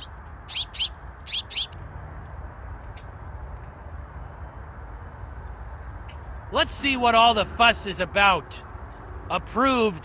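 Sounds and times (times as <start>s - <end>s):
songbird chirping: 0.0s - 1.8s.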